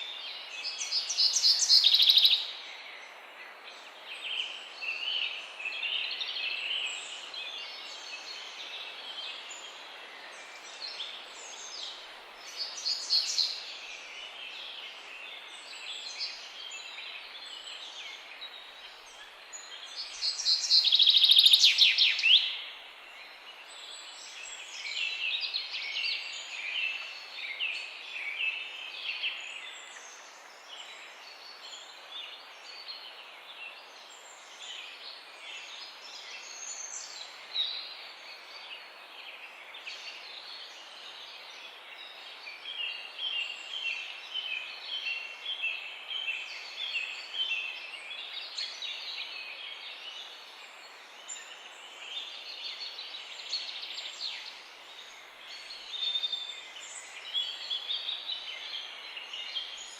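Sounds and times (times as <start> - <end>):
background hiss: 0.0 - 59.9
songbirds singing: 0.0 - 59.9.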